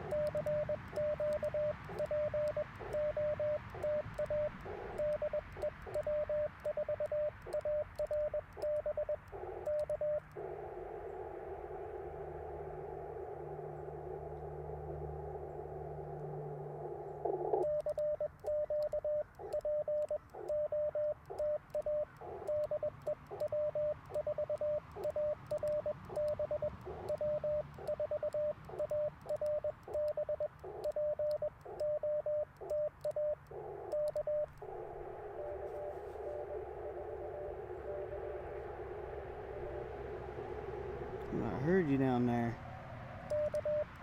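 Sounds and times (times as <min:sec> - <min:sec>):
faint keying clicks: 0:00.0 - 0:11.4, 0:15.7 - 0:38.2
morse code sidetone: 0:00.0 - 0:42.6, 0:43.2 - 0:44.0
radio receiver hiss: 0:00.0 - 0:42.6.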